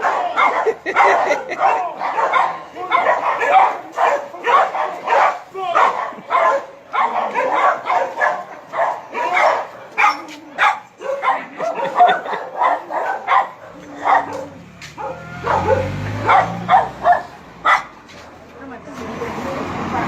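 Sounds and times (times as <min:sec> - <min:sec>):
dog barking and yipping: 0:00.0 - 0:18.0.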